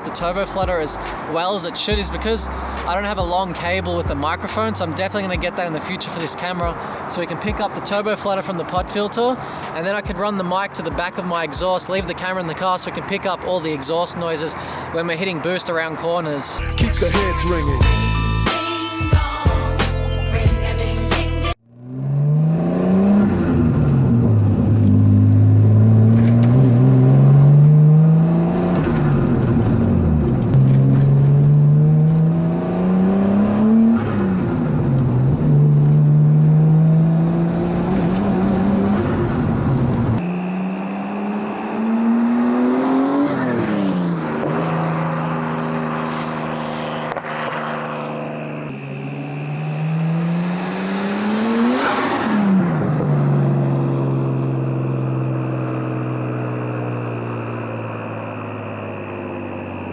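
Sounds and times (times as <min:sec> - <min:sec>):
car engine accelerating hard: 0:21.6 - 0:59.9.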